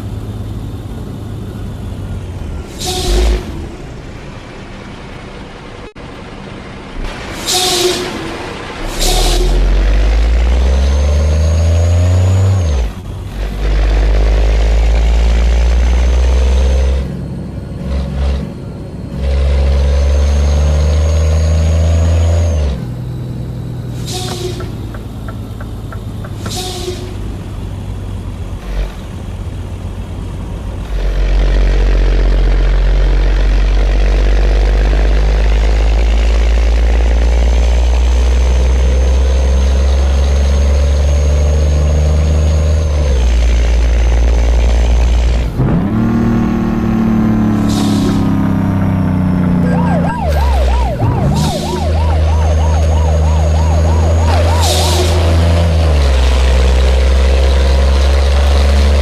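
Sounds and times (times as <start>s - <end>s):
truck diesel engine pulling hard: 0.0s - 59.0s
high whistle: 49.6s - 55.9s.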